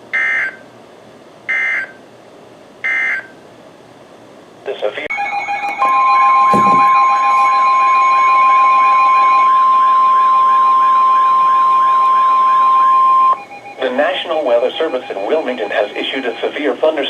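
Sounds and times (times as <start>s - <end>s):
steady high-pitched alarm tone: 5.1s - 16.8s.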